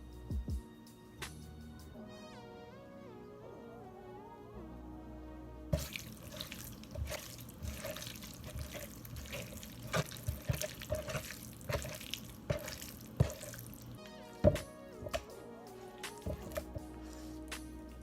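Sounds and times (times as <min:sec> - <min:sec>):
tap water running into sink: 0:05.8 - 0:15.2.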